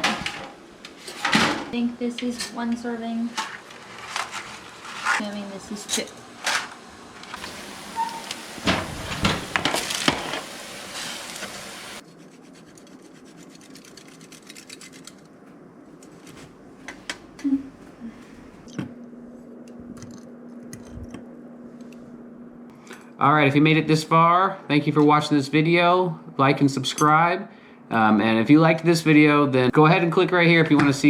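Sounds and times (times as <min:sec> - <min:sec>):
steady low hum: 0:00.0 - 0:31.0
scraping and rubbing strokes: 0:03.5 - 0:05.3, 0:10.9 - 0:15.3.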